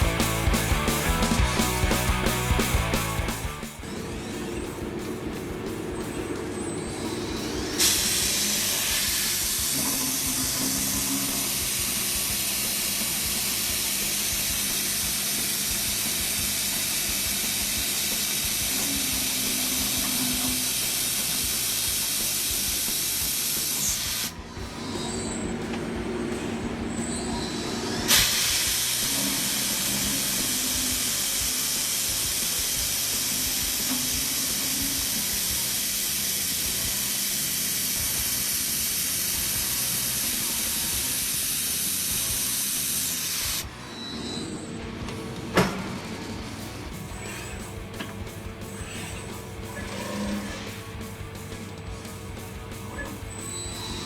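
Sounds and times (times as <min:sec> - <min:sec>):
low machine hum: 0:00.0 - 0:42.8
machine cutting steel with loud hiss: 0:03.8 - 0:44.8, 0:45.5 - 0:51.8, 0:52.6 - 0:54.0.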